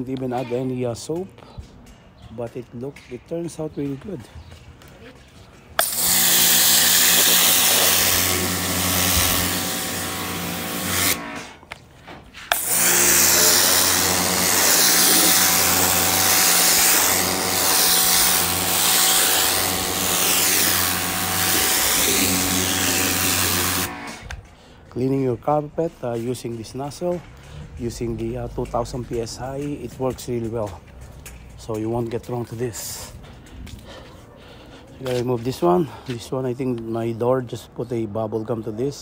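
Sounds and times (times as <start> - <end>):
water jet hissing on carpet: 5.8 - 11.2, 12.5 - 24.2
pressure washer pump humming: 5.8 - 11.6, 12.5 - 24.4.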